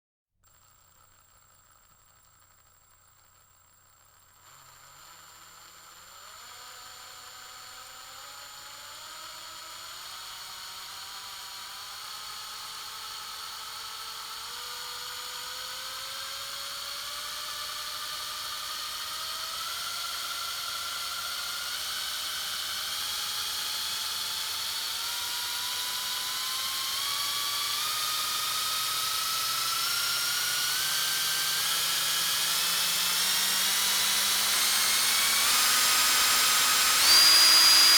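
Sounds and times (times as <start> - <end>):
electric drill whirring: 0.5 - 37.9.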